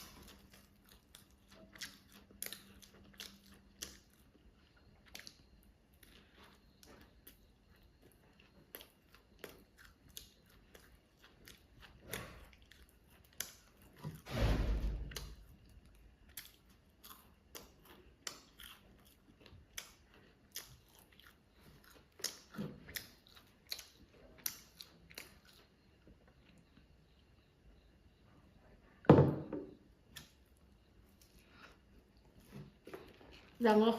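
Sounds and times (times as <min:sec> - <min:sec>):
chewing and biting: 0:00.0 - 0:27.0.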